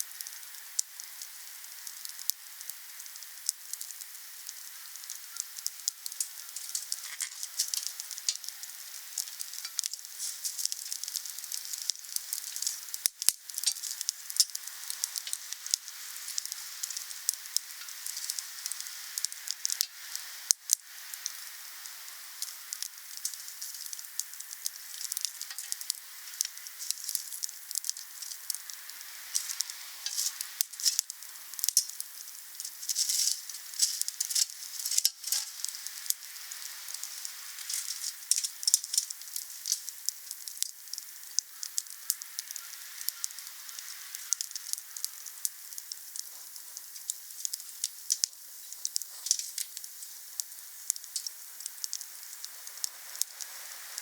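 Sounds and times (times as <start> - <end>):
campfire crackling and popping: 0.0 - 54.0
fire hissing: 0.0 - 54.0.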